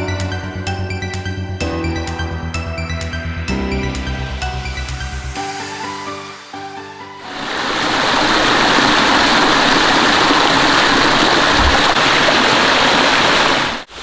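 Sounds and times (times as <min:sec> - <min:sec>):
waterfall rushing: 0:07.2 - 0:14.0.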